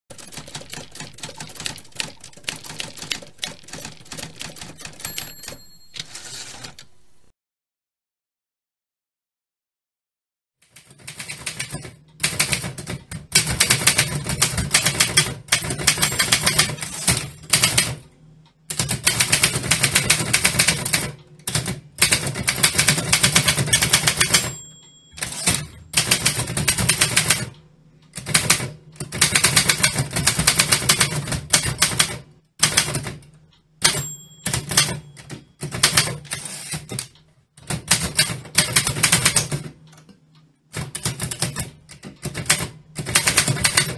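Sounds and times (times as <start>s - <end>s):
typewriter key strikes: 0.1s - 7.2s, 18.7s - 27.4s, 33.8s - 39.6s
typewriter margin bell ringing: 0.2s - 7.2s, 15.8s - 17.7s, 23.8s - 26.1s, 33.8s - 35.6s.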